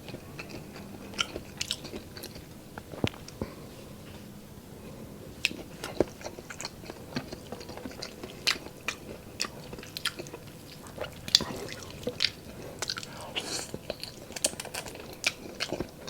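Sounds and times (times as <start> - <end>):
person chewing food: 0.0 - 4.2, 4.8 - 16.0
crunch of food: 5.4 - 16.0.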